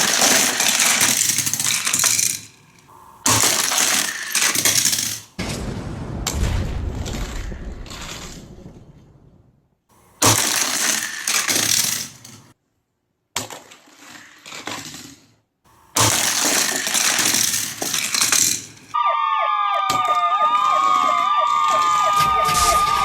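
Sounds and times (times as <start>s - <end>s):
crashing clattering noise: 0.0s - 12.6s, 15.8s - 19.0s.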